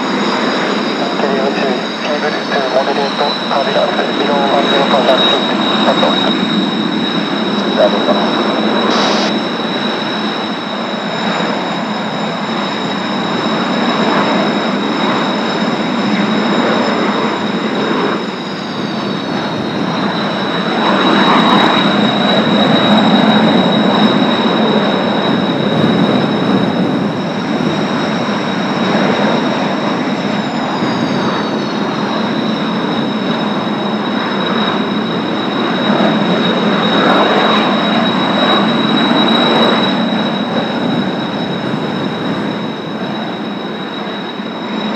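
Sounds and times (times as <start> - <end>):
dense rushing noise: 0.0 - 10.2
jet engine turbine whine: 0.0 - 44.9.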